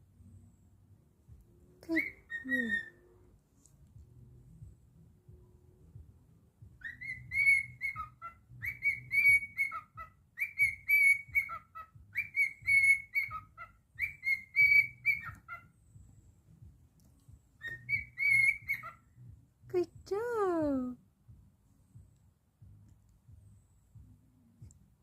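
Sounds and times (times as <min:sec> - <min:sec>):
cockatiel whistling: 0:02.0 - 0:03.0, 0:06.8 - 0:15.7, 0:17.6 - 0:19.1.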